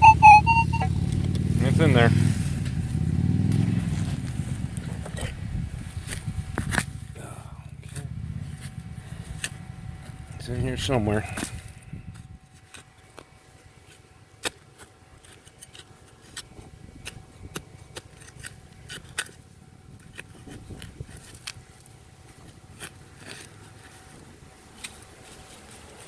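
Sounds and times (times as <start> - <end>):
faint steady tone: 0.0 - 0.9.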